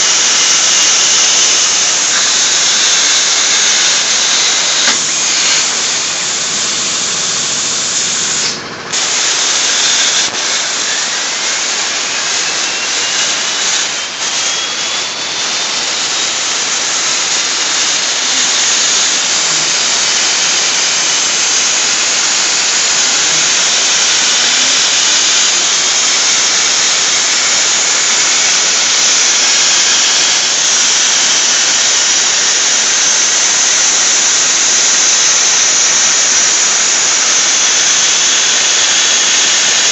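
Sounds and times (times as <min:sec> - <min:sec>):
plasma torch hissing: 0:00.0 - 0:39.9.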